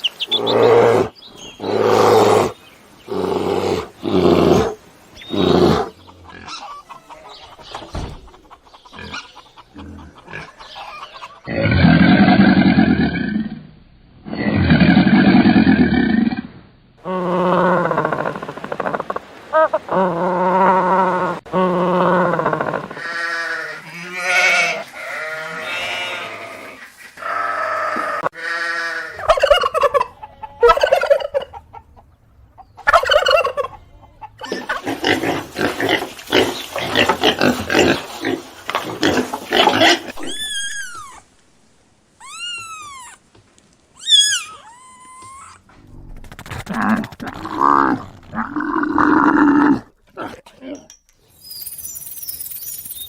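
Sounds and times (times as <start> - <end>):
poultry calls: 0.0 - 11.6
high chirps: 51.0 - 53.0.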